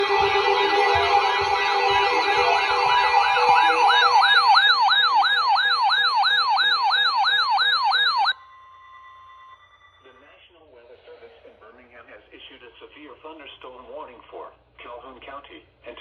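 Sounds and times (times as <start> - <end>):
music bed: 0.0 - 6.8
electronic yelp siren: 0.0 - 10.2.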